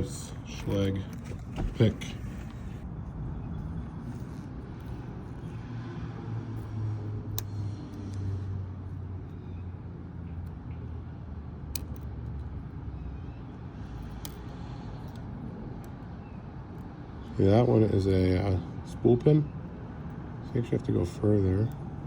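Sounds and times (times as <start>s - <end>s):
lock pick clicks: 11.7s - 12.1s.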